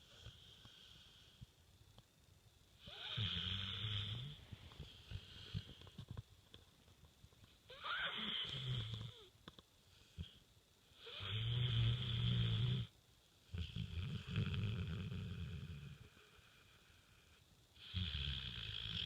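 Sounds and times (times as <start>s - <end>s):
dog snoring loudly: 2.8s - 5.7s, 7.7s - 9.3s, 11.0s - 12.9s, 13.5s - 16.2s, 17.8s - 19.0s.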